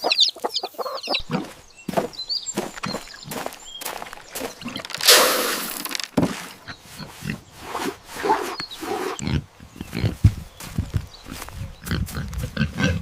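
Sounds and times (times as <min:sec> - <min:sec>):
animal grunting: 0:01.2 - 0:01.6, 0:08.2 - 0:10.2, 0:11.8 - 0:13.0
knocks and rustles: 0:04.2 - 0:06.6
loud rasping burst: 0:04.8 - 0:06.1.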